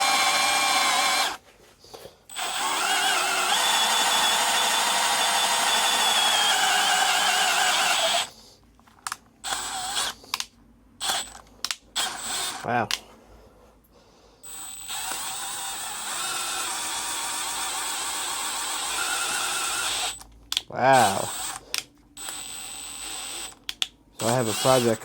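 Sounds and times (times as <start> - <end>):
electric drill motor whining: 0.0 - 1.4, 2.3 - 8.3, 9.4 - 10.2, 11.0 - 11.4, 12.0 - 12.7, 14.4 - 20.3, 21.0 - 21.6, 22.2 - 23.6, 24.2 - 25.0.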